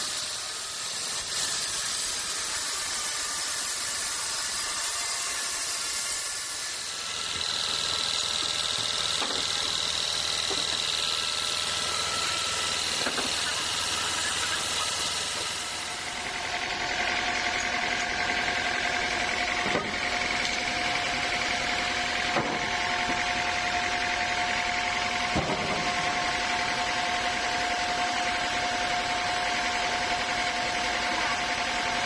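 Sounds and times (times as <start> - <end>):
sawmill machinery whining: 0.0 - 32.0.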